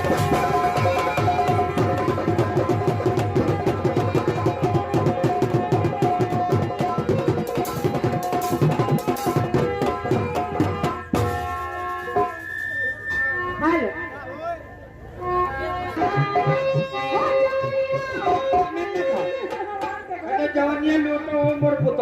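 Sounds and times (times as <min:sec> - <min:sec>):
hand drums played fast: 0:00.0 - 0:12.3, 0:16.0 - 0:20.4, 0:21.4 - 0:22.0
held melody line: 0:00.0 - 0:20.1.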